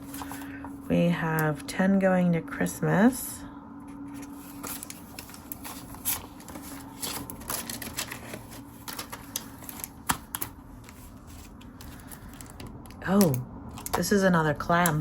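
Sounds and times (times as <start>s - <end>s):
paper rustling: 0.0s - 0.6s, 4.1s - 14.0s.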